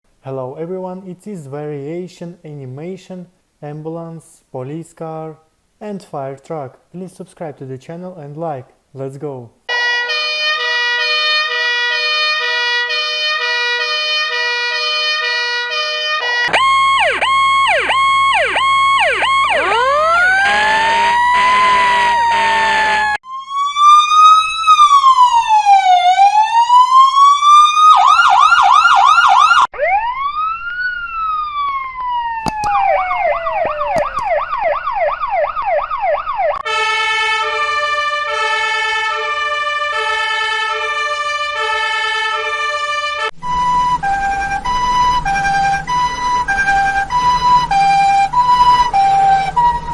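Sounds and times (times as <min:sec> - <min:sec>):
emergency vehicle siren: 0:16.3 - 0:49.9.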